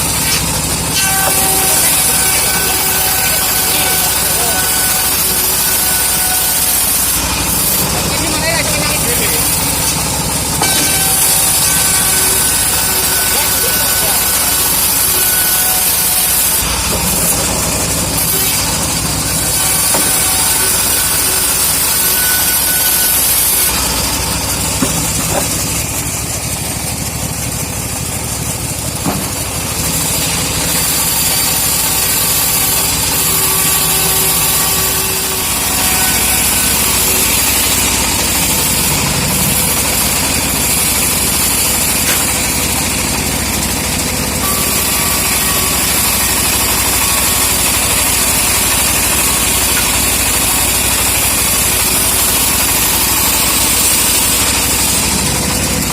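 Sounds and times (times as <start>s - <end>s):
engine saw cutting wood: 0.0s - 55.9s.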